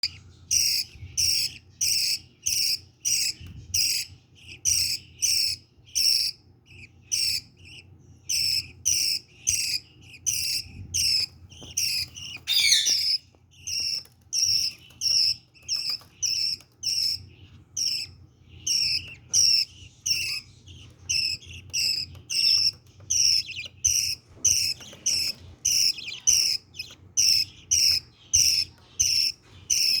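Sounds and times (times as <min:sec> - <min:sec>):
budgerigar chicks begging cheeps: 0:10.4 - 0:13.2.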